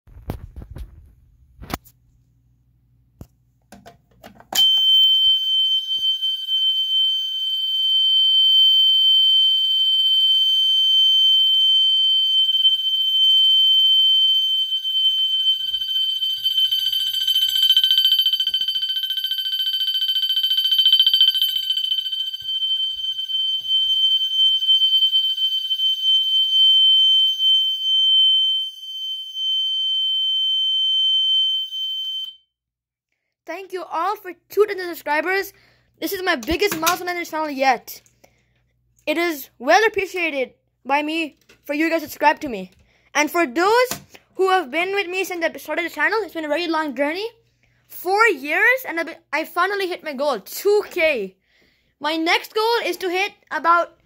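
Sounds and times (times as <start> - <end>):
fire alarm high-pitched tone: 4.6 - 32.5.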